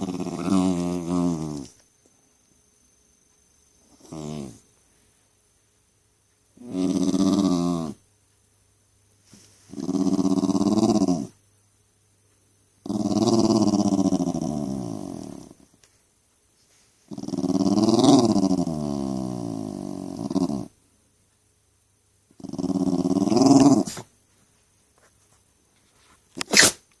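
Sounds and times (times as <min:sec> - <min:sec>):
dog growly moans: 0:00.0 - 0:01.7, 0:03.9 - 0:04.6, 0:06.6 - 0:08.0, 0:09.7 - 0:11.3, 0:12.8 - 0:15.6, 0:17.1 - 0:20.7, 0:22.4 - 0:24.0
dog sneezing: 0:26.4 - 0:26.9.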